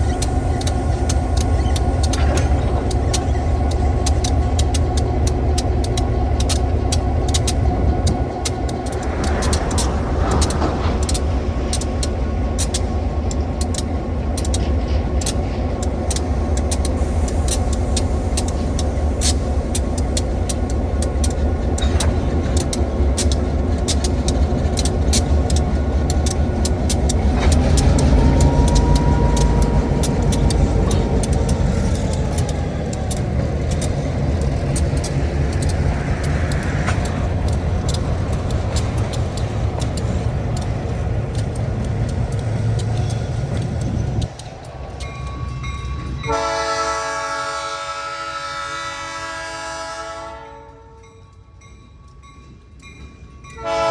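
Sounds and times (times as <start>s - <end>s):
low vehicle rumble: 0.0s - 12.8s, 15.8s - 45.0s
sharp clicks and knocks: 0.1s - 45.4s.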